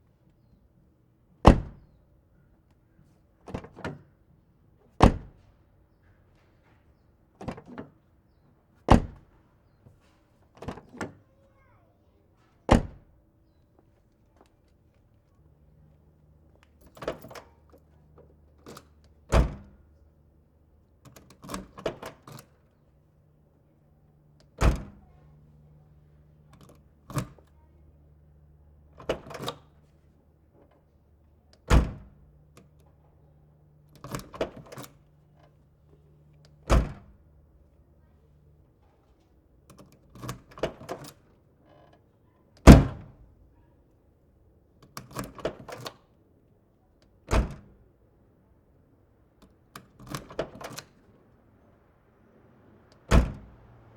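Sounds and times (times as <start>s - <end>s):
car door shutting: 31.7s - 32.2s, 36.7s - 37.2s, 42.6s - 43.2s, 53.1s - 53.6s.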